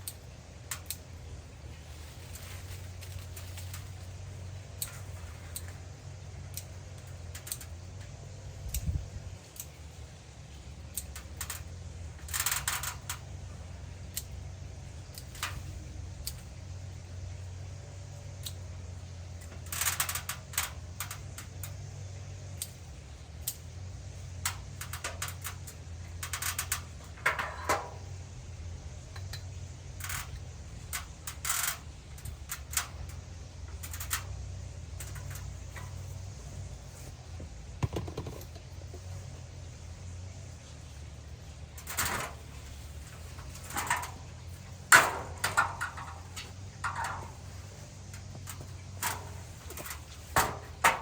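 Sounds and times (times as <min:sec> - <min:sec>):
steady low hum: 0:00.0 - 0:51.0
rustling: 0:00.7 - 0:06.0.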